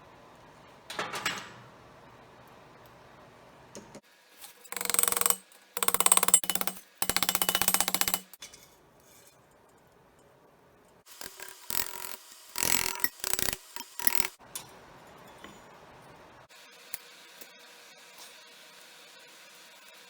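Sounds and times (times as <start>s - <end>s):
hand tool scraping workpiece: 11.2s - 14.4s.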